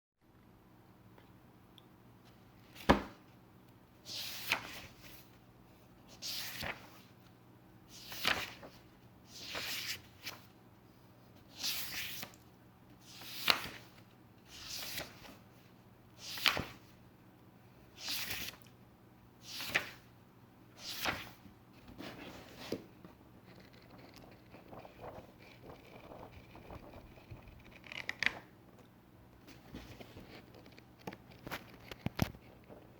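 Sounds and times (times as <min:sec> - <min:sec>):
book pages turning: 0:04.1 - 0:05.2, 0:06.2 - 0:07.0, 0:07.9 - 0:10.5, 0:11.5 - 0:12.4, 0:13.0 - 0:15.4, 0:16.2 - 0:16.9, 0:18.0 - 0:18.6, 0:19.4 - 0:20.0, 0:20.8 - 0:28.5, 0:29.4 - 0:32.9.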